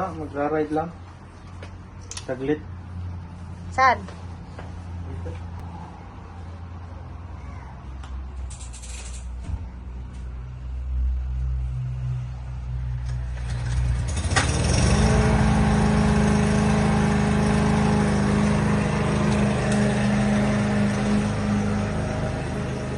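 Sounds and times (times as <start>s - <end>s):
low engine hum: 9.5s - 22.9s
small engine starting and running: 13.0s - 22.9s.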